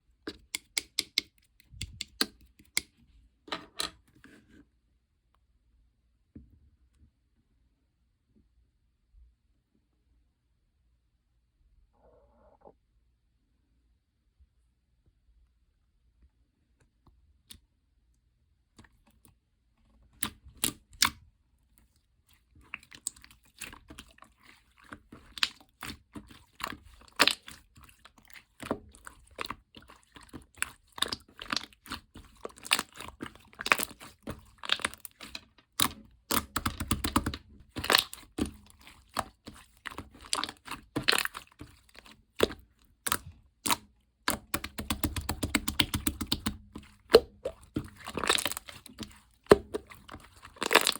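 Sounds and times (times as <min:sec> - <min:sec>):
slime clicking and popping: 0:26.6 - 0:27.6, 0:30.1 - 0:50.9.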